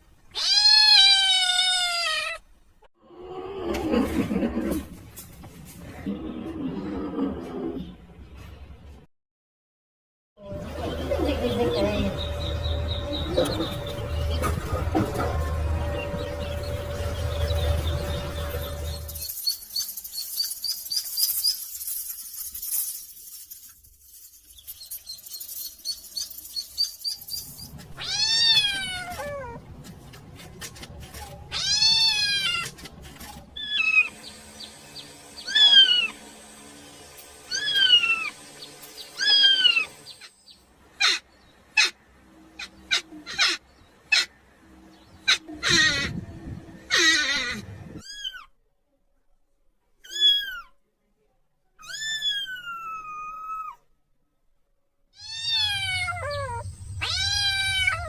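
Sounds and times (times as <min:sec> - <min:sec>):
kitten meowing: 0:00.3 - 0:02.4, 0:51.8 - 0:53.8, 0:55.2 - 0:58.0.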